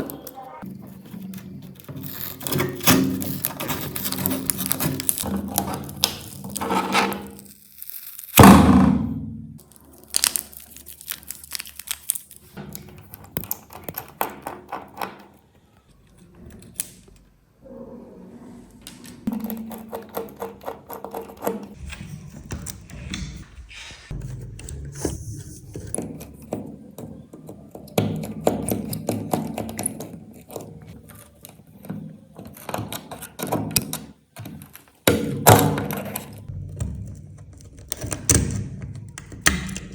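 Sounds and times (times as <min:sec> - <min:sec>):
small parts clicking and crinkling: 0:00.0 - 0:08.4, 0:09.6 - 0:17.3
loud thud: 0:08.4 - 0:09.6.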